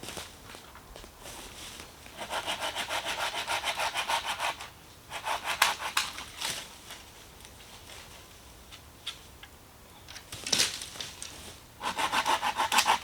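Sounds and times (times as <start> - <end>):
hand saw cutting wood: 2.1 - 6.3, 11.8 - 13.0.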